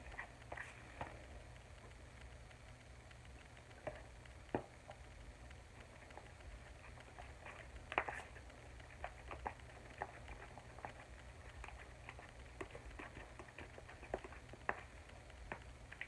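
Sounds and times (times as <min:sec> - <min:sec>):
spoon stirring slime: 0:00.0 - 0:01.1, 0:05.8 - 0:16.0.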